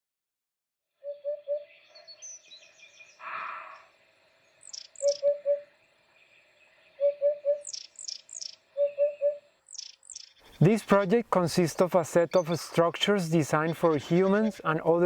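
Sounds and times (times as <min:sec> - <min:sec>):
high bird chirps: 0:01.0 - 0:03.9, 0:04.5 - 0:05.7, 0:06.7 - 0:10.6
bird low hooting call: 0:01.0 - 0:04.0, 0:04.6 - 0:05.8, 0:06.4 - 0:10.6.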